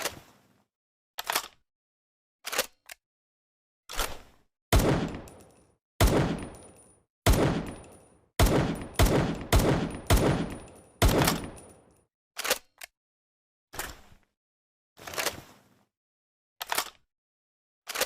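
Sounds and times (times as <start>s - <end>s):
pistol shots with echo: 4.8s - 5.4s, 6.0s - 6.7s, 7.3s - 11.7s.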